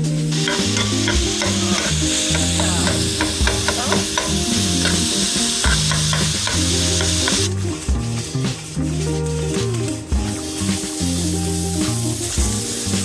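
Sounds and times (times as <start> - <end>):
background music: 0.0 - 13.0
food sizzling in a hot pan: 0.3 - 7.6, 10.2 - 13.0.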